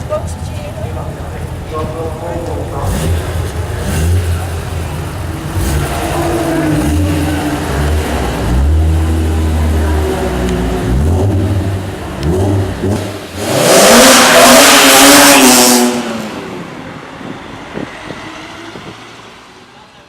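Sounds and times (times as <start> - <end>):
car engine revving hard: 2.7 - 16.8.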